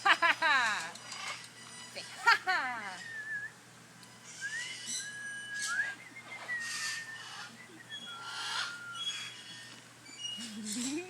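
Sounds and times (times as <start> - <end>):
parrot whistling: 3.0 - 3.6, 4.3 - 10.6.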